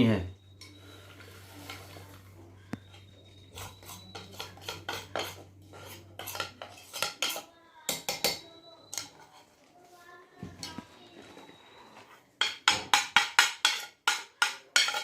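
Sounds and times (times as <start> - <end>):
metal utensils clinking in mortar: 3.5 - 9.4, 12.4 - 15.0.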